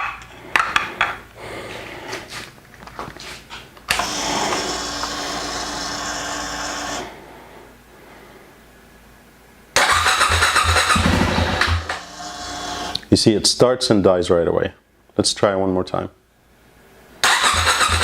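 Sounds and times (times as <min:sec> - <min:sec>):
fuel pump whining: 0:03.9 - 0:07.1, 0:09.8 - 0:13.0.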